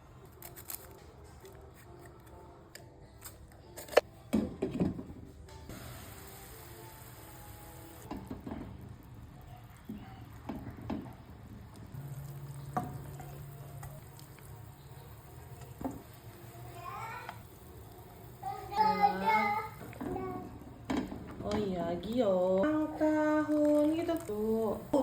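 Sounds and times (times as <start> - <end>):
food sizzling in a pan: 5.7 - 25.0.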